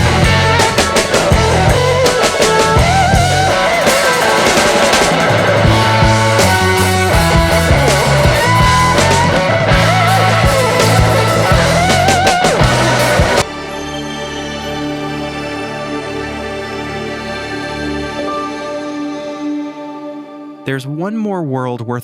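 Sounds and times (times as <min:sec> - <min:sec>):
drum hits: 0:00.0 - 0:13.5
bass line: 0:00.0 - 0:13.6
wavering lead melody: 0:00.0 - 0:22.0.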